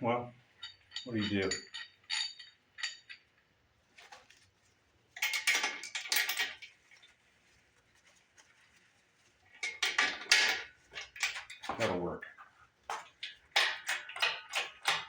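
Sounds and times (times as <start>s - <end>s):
chain and shackle rattling: 0.5s - 4.4s, 5.1s - 7.2s, 9.5s - 15.0s.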